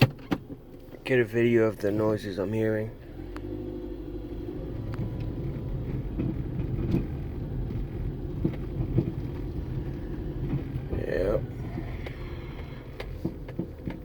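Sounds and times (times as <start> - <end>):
sharp clunks from underneath car: 0.0 - 1.1, 5.8 - 14.0
car rumbling over rough road: 0.0 - 14.0.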